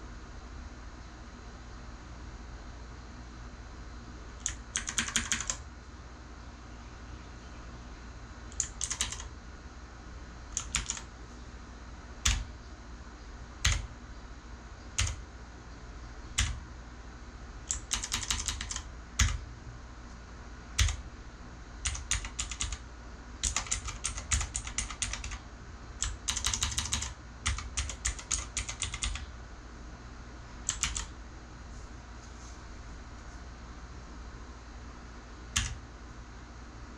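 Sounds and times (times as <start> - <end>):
clicky keyboard typing: 4.4 - 5.6, 8.5 - 9.3, 10.5 - 11.1, 12.3 - 12.5, 13.6 - 13.9, 15.0 - 15.2, 16.4 - 16.6, 17.7 - 19.4, 20.8 - 21.0, 21.8 - 22.8, 23.4 - 25.4, 26.0 - 29.3, 30.7 - 31.2, 35.6 - 35.8.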